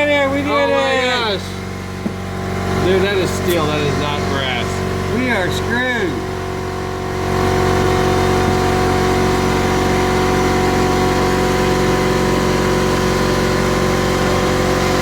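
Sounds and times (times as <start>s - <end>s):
air die grinder running: 0.0s - 15.0s.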